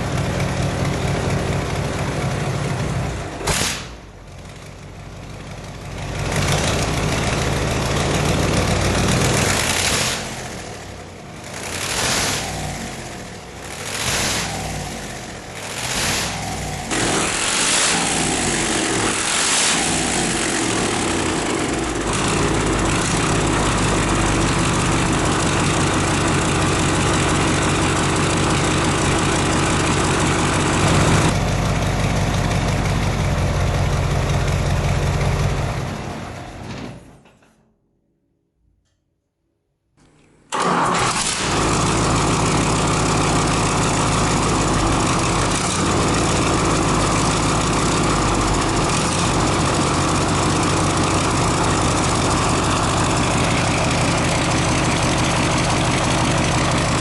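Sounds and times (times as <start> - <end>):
diesel engine running: 0.0 - 36.6, 40.5 - 57.0.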